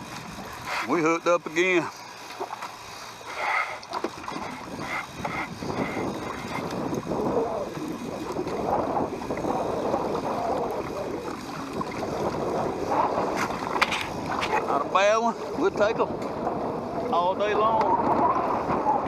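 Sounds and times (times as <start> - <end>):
water slapping against boat hull: 1.6 - 15.0
strong wind buffeting microphone: 4.0 - 19.0.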